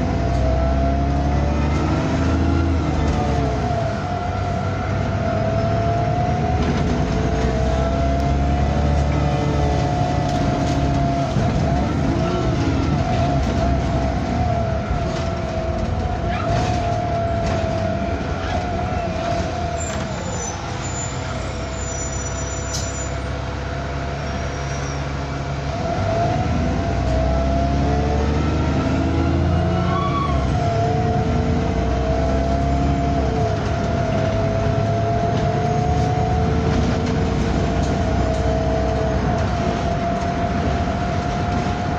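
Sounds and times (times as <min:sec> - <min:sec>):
bus engine low drone: 0:00.0 - 0:41.9.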